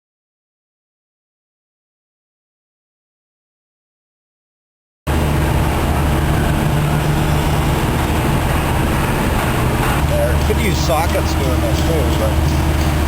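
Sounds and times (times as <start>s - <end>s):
engine droning: 5.1s - 13.0s.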